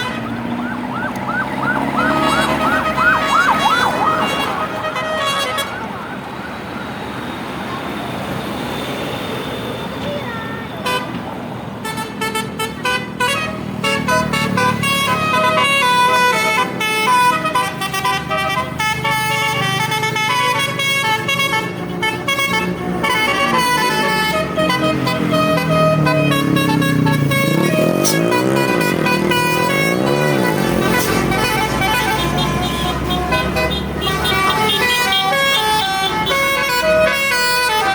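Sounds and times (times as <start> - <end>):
engine running: 0.0 - 4.8
bus musical horn melody: 0.0 - 6.2, 11.8 - 37.9.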